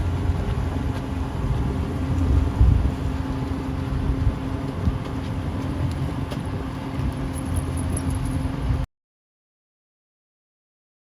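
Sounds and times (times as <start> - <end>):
outboard motor running: 0.0 - 8.8
wind rumble: 0.0 - 8.9.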